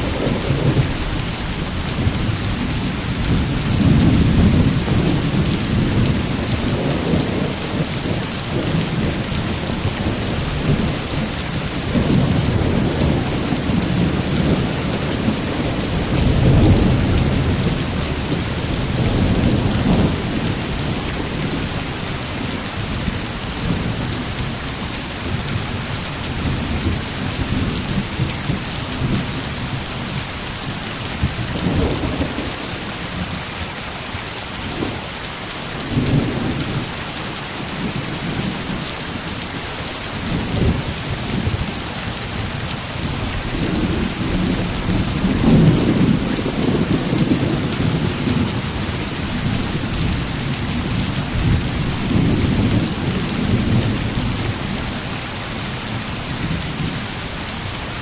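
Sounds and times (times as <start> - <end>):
thunder rumbling: 0.0 - 24.6, 43.0 - 55.2
heavy rain: 0.0 - 58.0.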